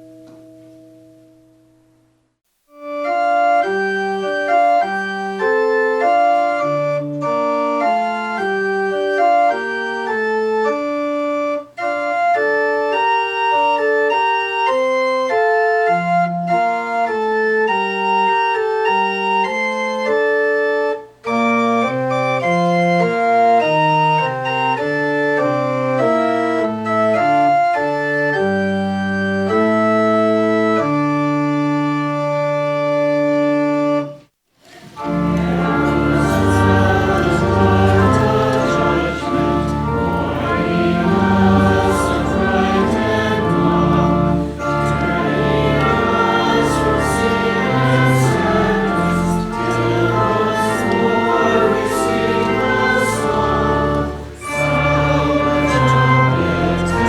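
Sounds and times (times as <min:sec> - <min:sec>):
church organ playing chords: 0:02.7 - 0:34.2, 0:34.8 - 0:57.0.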